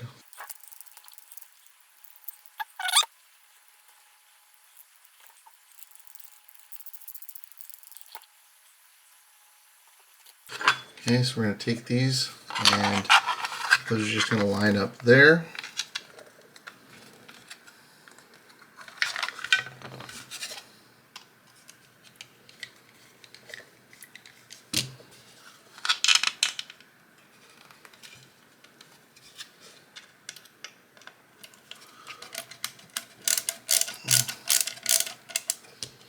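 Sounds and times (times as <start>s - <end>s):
screws and plastic parts clicking: 5.7s - 8.2s, 30.0s - 36.0s.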